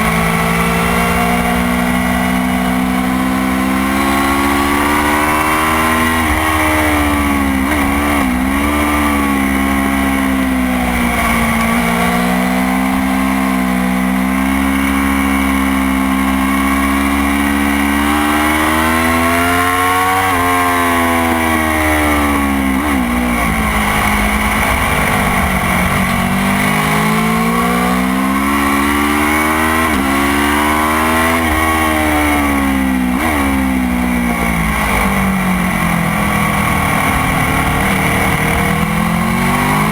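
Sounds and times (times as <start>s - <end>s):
motorcycle engine revving: 0.0s - 39.9s
wind noise: 21.0s - 31.8s, 34.3s - 39.9s.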